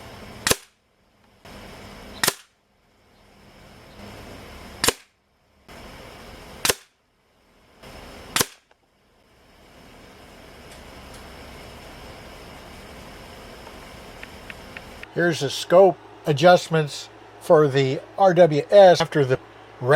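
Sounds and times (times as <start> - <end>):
air rifle shots: 0.4 - 0.8, 2.2 - 2.6, 4.8 - 5.2, 6.6 - 7.0, 8.3 - 8.7.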